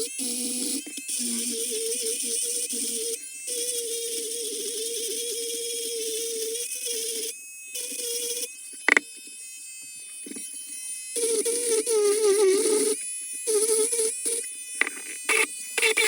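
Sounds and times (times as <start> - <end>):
rotary tool whining: 7.8 - 16.0.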